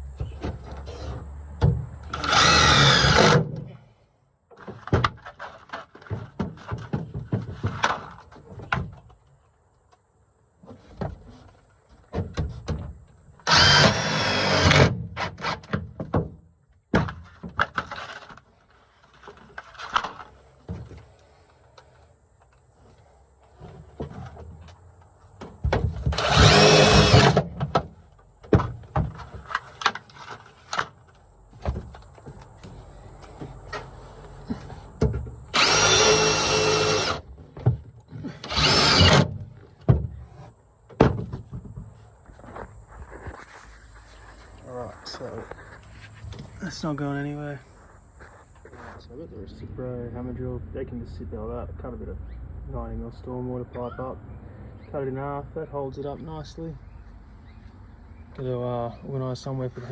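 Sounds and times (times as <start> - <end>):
handling knocks and thumps: 0.0 - 2.1, 4.5 - 9.2, 19.1 - 21.2, 23.5 - 35.8, 37.2 - 42.6
cordless drill running: 2.1 - 3.4, 13.5 - 14.9, 26.2 - 27.4, 35.5 - 37.2, 38.4 - 39.3
power tool whirring: 2.1 - 3.5, 13.4 - 15.5, 26.1 - 27.4, 35.5 - 37.2, 38.3 - 39.4.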